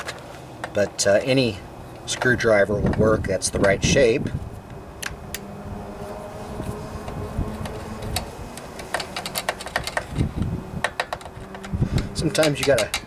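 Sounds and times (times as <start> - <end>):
steady low hum: 0.3 - 13.0
screwdriver tapping metal: 7.6 - 13.0.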